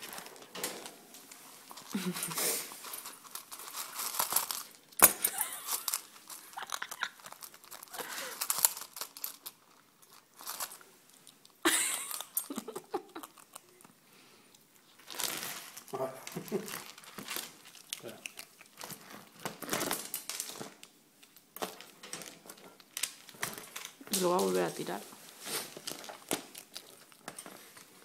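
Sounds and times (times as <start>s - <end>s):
pet crunching food: 1.6s - 14.0s, 14.8s - 20.9s, 25.3s - 28.0s.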